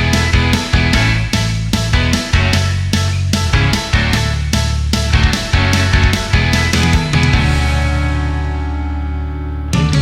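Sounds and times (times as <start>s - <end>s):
drums: 0.0s - 10.0s
rock music: 0.0s - 10.0s
electric guitar chord ringing: 5.1s - 10.0s.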